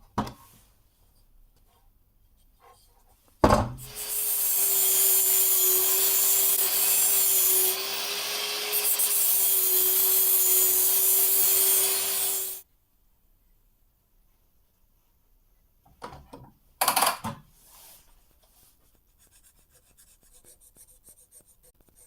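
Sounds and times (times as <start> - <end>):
power tool cutting with hiss: 3.8 - 12.6.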